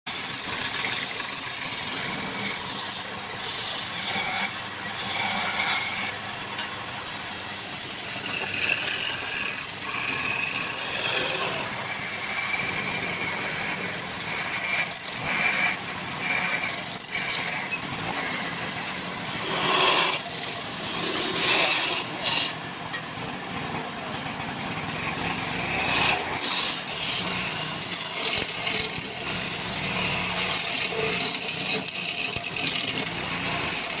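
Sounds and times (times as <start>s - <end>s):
wood lathe cutting wood: 0.1s - 34.0s.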